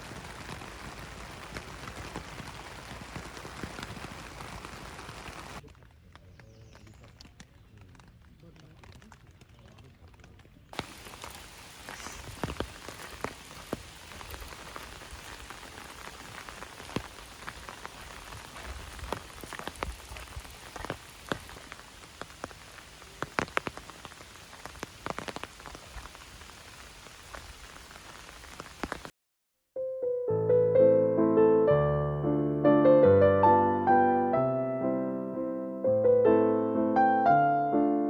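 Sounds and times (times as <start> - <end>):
steady rain: 0.0 - 6.1, 10.1 - 29.1
piano music: 29.8 - 38.0.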